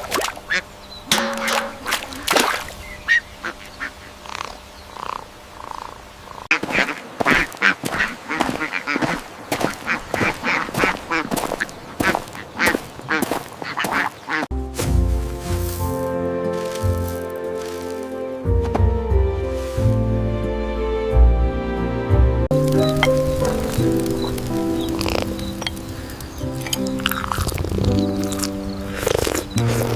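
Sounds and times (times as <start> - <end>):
flock of birds calling: 0.5 - 14.5, 22.7 - 29.9.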